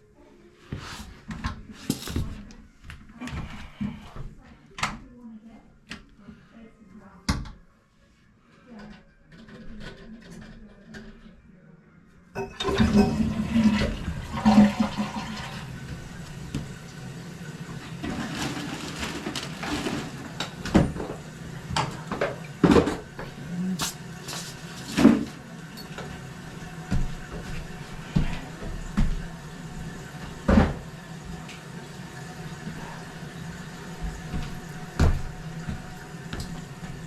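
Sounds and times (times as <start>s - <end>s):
toilet flushing: 12.4s - 37.0s
toilet tank refilling: 12.4s - 37.0s.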